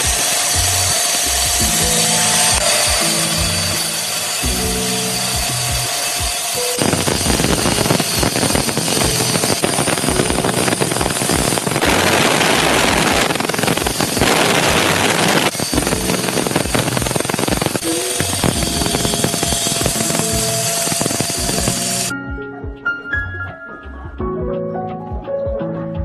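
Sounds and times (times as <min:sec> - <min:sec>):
power tool cutting wood: 0:00.0 - 0:22.1.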